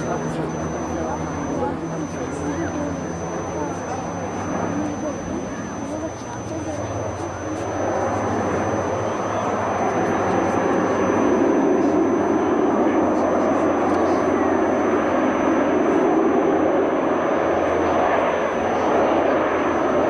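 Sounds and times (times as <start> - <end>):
propeller plane flying past: 0.0 - 20.0.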